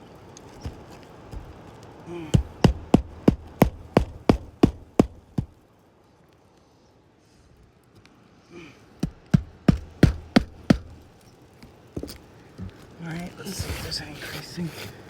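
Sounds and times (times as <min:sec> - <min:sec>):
hammer blows: 0:02.3 - 0:05.5, 0:09.0 - 0:11.0.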